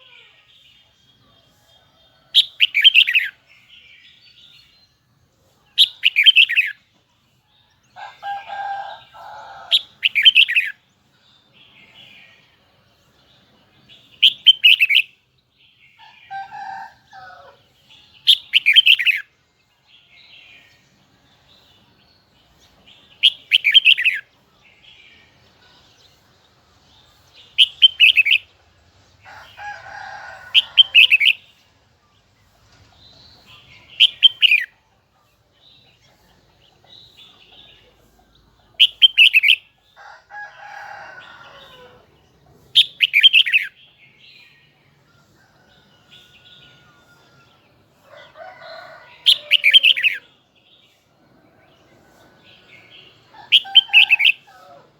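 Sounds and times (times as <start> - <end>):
bird singing high phrases: 5.7 - 6.8, 18.0 - 19.4, 27.1 - 28.5, 33.3 - 34.8, 38.7 - 39.8, 42.8 - 44.7, 52.6 - 54.5.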